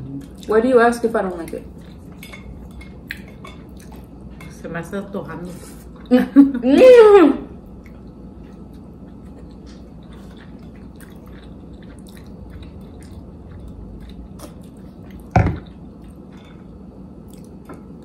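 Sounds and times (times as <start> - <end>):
chewing with wet mouth clicks: 1.5 - 4.3, 7.8 - 16.6, 17.2 - 18.0.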